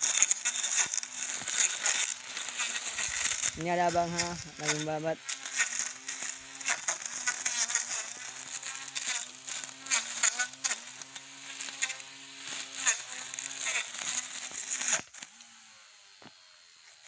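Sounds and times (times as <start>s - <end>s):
cutting head slashing grass: 0.0s - 11.2s
brush cutter motor hum: 0.0s - 17.0s.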